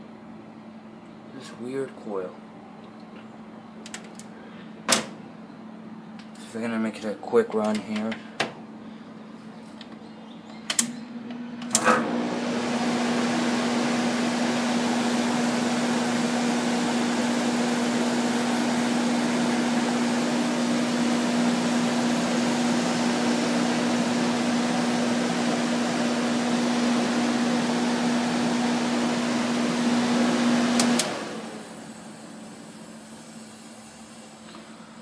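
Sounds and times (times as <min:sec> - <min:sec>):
air conditioner running: 0:00.0 - 0:35.0.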